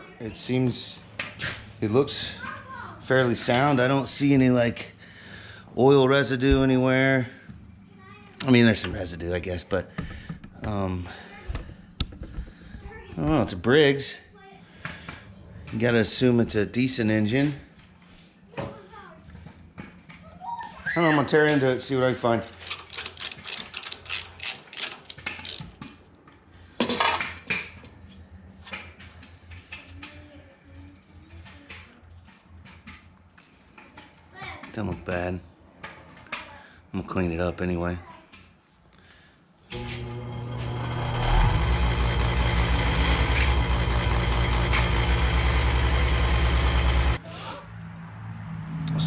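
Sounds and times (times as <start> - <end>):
motor running: 39.7 - 47.2.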